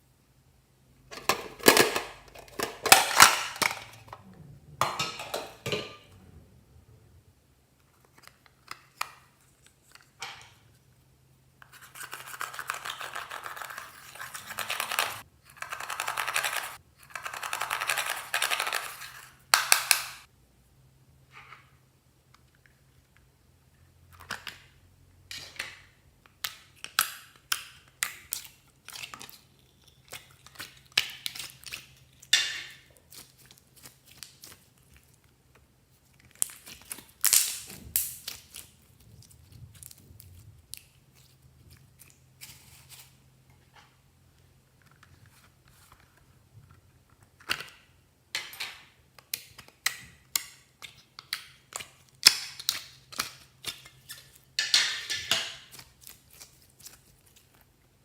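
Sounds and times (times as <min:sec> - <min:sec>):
slime crackling and popping: 0:36.2 - 0:41.2.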